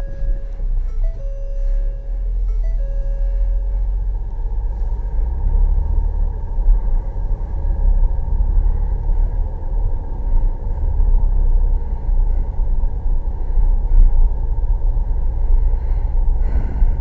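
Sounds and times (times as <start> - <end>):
tones changing pitch: 0.0 - 3.7
vehicle rumbling: 0.0 - 17.0.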